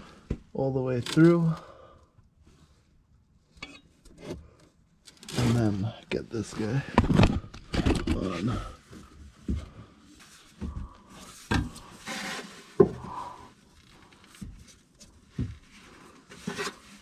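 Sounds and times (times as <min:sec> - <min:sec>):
rubber rubbing and scraping on metal: 0:05.2 - 0:06.9, 0:11.2 - 0:17.0.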